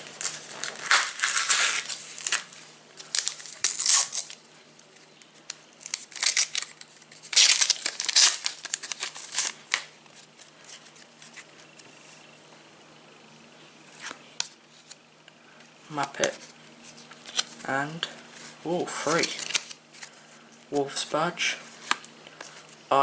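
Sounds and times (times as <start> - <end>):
wrapper tearing and crinkling: 0.0 - 4.4, 5.8 - 9.9, 19.1 - 20.1.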